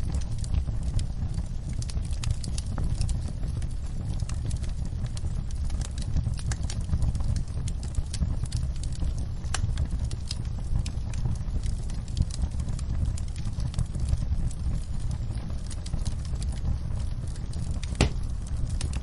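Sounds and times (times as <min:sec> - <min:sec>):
wood fire crackling: 0:00.0 - 0:19.0
low rumble: 0:09.2 - 0:19.0.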